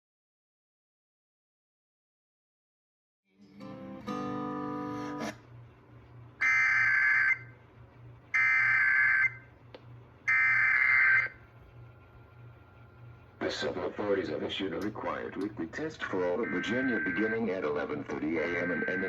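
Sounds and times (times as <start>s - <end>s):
alert data tone bursts: 6.4s - 7.5s, 8.4s - 9.4s, 10.3s - 11.4s, 16.3s - 17.7s, 18.4s - 19.0s.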